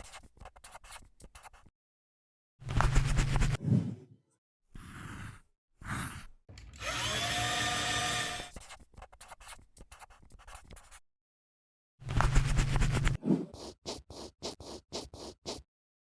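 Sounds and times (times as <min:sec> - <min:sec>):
power tool whirring: 0:06.6 - 0:08.5.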